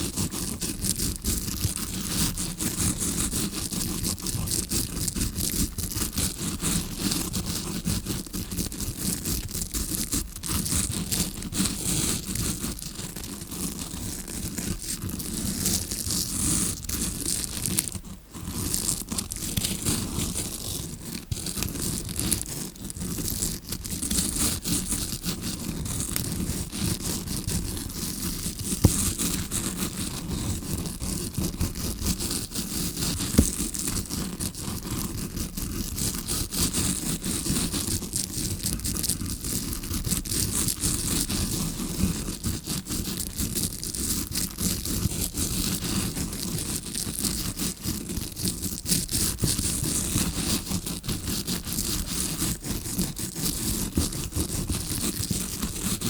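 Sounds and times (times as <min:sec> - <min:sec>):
bristle brush scratching microphone: 0:00.0 - 0:56.0.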